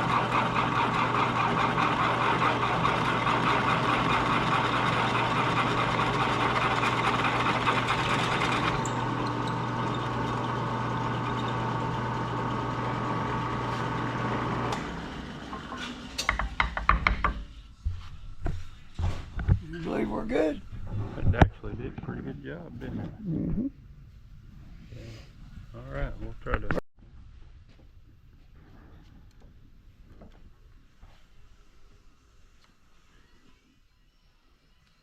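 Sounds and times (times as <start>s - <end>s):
motor humming: 0.0s - 16.2s
sharp clicks and knocks: 15.6s - 17.4s.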